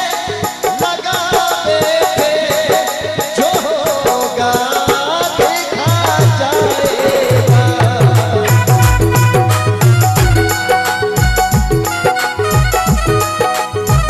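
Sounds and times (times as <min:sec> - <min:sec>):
steady percussion: 0:00.0 - 0:14.0
melody with sliding notes: 0:07.2 - 0:14.0
heavy bass beat: 0:07.4 - 0:13.3.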